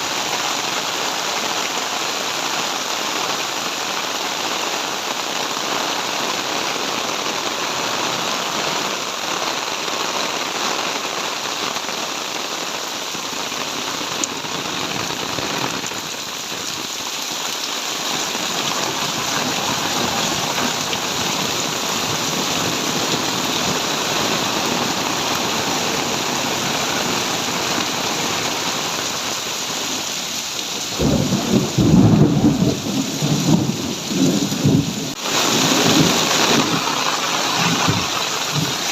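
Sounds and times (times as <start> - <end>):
heavy rain pouring: 0.0 - 38.9
loud thunder rumble: 30.9 - 38.9.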